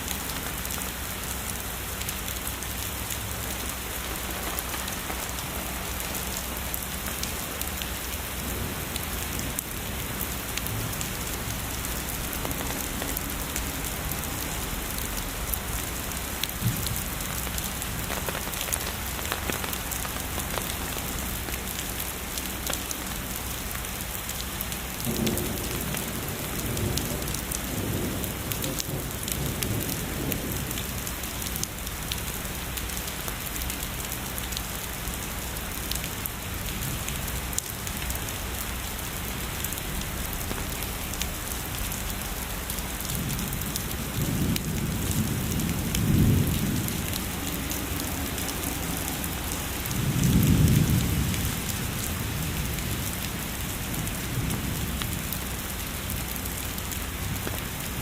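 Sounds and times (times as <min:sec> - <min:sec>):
heavy rain falling: 0:00.0 - 0:58.0
distant thunder rumbling: 0:43.2 - 0:54.9.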